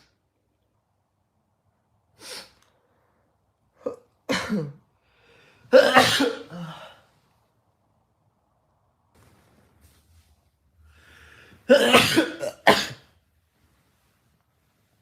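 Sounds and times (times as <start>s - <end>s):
man sneezing: 5.7s - 7.0s, 11.7s - 13.1s.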